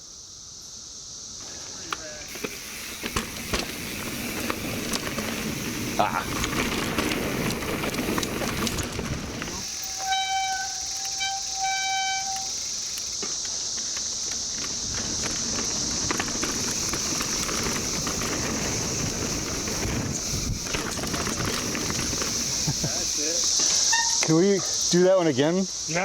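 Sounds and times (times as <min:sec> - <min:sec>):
cicadas droning: 0:00.0 - 0:26.0
bike rolling on dirt trail: 0:01.3 - 0:26.0
squealing tone: 0:09.6 - 0:12.6, 0:23.8 - 0:24.3.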